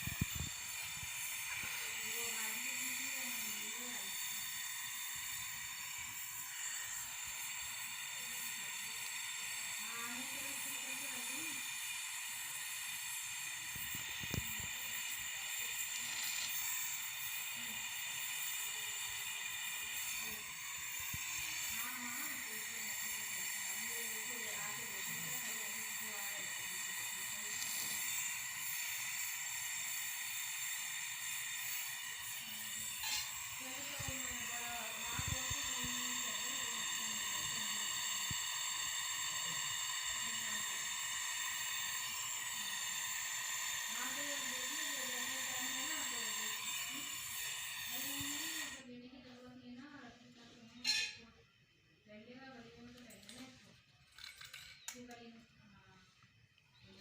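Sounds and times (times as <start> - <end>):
gas torch flame hissing: 0.0 - 48.9.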